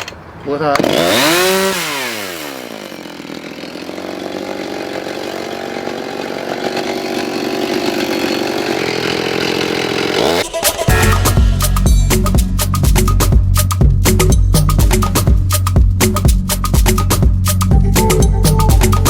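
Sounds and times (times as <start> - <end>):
chainsaw engine idling: 0.7 - 10.4.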